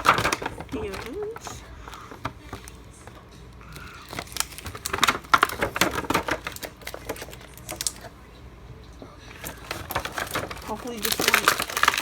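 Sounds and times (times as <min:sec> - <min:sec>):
plastic package crackling: 0:00.0 - 0:08.2, 0:09.2 - 0:12.0.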